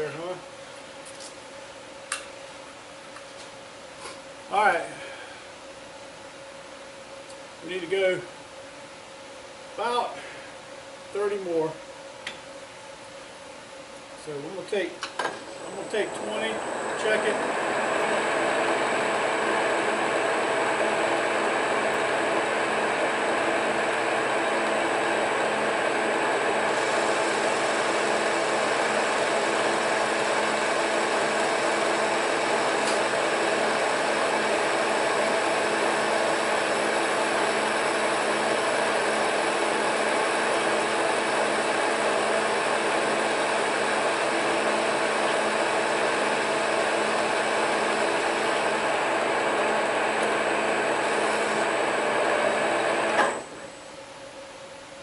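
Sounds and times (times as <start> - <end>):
metal lathe running: 15.4 - 53.6.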